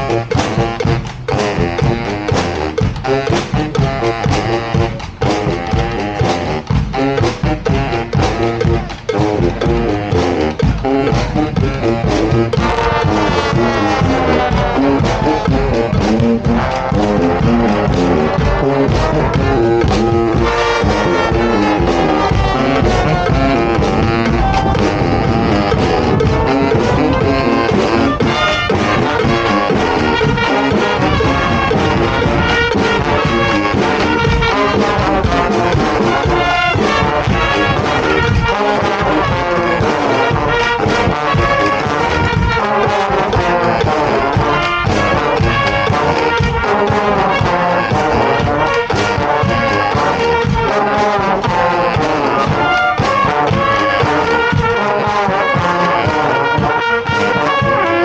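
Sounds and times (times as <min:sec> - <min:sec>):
percussion hits: 0:00.0 - 0:58.0
trombones: 0:00.0 - 0:58.0
trumpets: 0:00.0 - 0:58.0.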